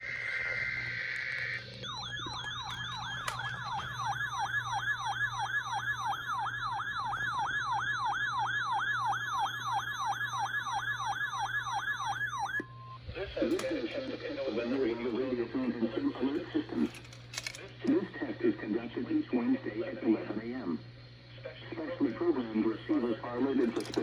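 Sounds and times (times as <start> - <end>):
falling siren alert tone: 0.0 - 12.9
high data tone: 0.0 - 13.0.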